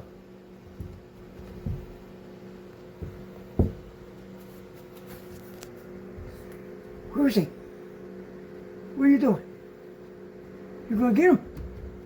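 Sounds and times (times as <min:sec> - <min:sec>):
electrical hum: 0:00.0 - 0:12.0
soft knocks and thumps: 0:00.6 - 0:02.1, 0:02.9 - 0:04.1.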